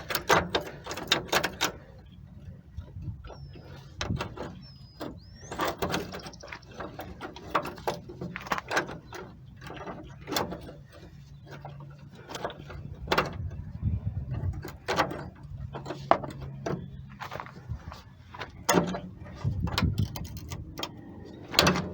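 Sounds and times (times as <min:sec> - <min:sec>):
wrenches clanking on metal: 0:00.0 - 0:21.9.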